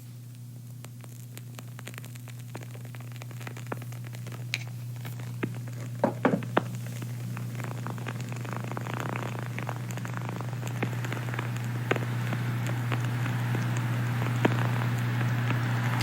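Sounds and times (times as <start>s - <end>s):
low room tone hum: 0.0s - 16.0s
sharp crackles and clicks: 0.0s - 16.0s
louder pops: 5.9s - 6.8s.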